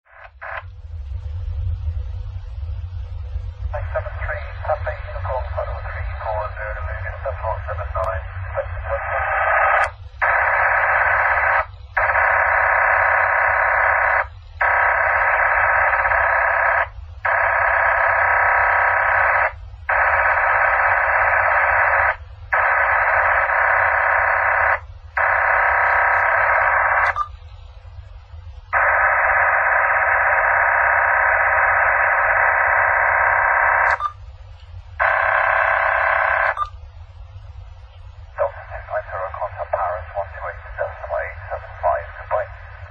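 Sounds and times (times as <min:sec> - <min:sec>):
harsh radio scanner buzz: 0:00.0 - 0:00.7, 0:03.8 - 0:27.3, 0:28.8 - 0:34.1, 0:35.0 - 0:36.7, 0:38.4 - 0:42.9.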